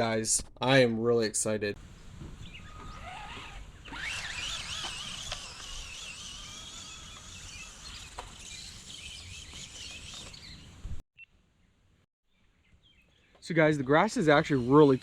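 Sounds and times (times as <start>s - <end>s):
toy car electric motor whining: 2.6s - 10.6s, 14.1s - 15.0s.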